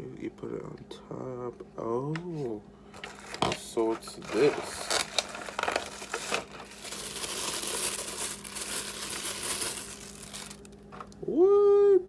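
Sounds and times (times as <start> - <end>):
packaging crinkling: 3.0 - 11.2.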